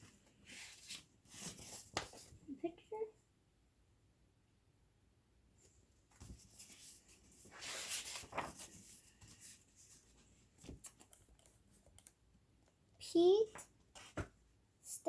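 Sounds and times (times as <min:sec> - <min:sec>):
book pages rustling: 0:00.0 - 0:02.4, 0:06.1 - 0:12.2, 0:13.4 - 0:14.4.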